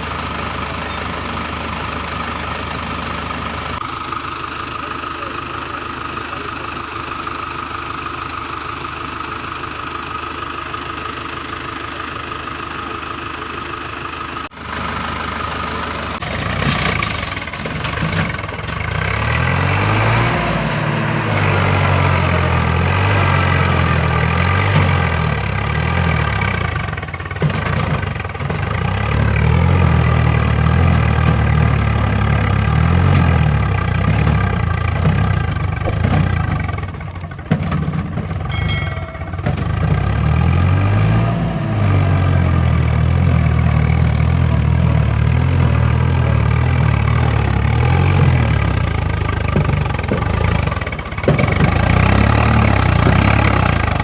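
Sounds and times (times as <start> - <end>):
tractor engine running: 0.0 - 54.0
heavy engine note: 34.2 - 43.7.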